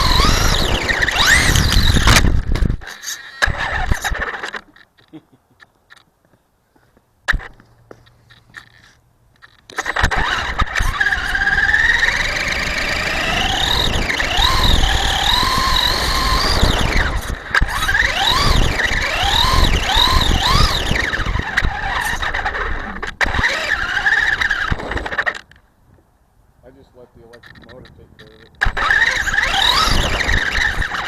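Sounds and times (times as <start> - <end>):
electric motor whining: 0.0 - 4.6, 9.7 - 25.5, 28.6 - 31.0.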